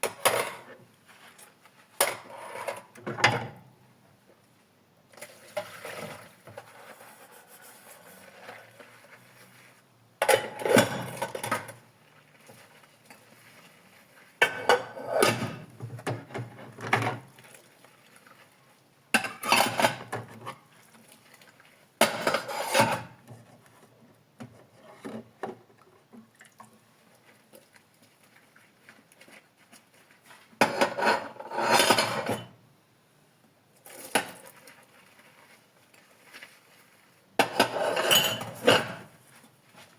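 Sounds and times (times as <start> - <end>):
dishes and cutlery clattering: 10.2 - 11.8, 19.2 - 20.4, 30.6 - 32.5, 37.4 - 39.1.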